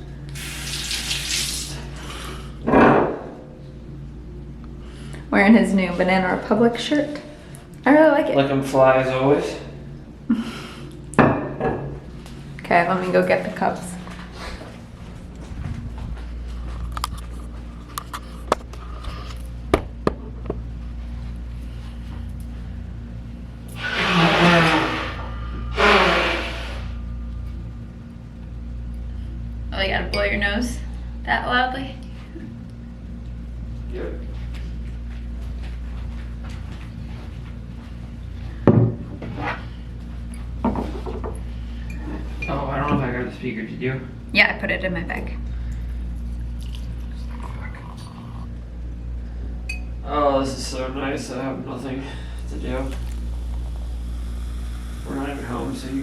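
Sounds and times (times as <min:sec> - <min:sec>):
low hum: 0:00.0 - 0:56.0.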